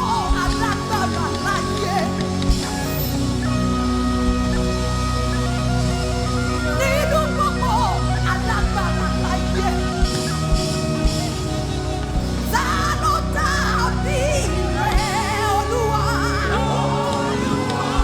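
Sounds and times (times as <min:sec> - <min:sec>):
bass and keyboard chords: 0:00.0 - 0:18.0
wavering melodic lead line: 0:00.0 - 0:18.0.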